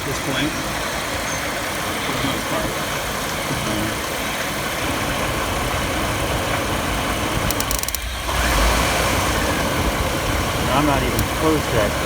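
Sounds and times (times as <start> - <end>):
engine idling: 0.0 - 12.0
electric arcing snaps: 7.5 - 8.5.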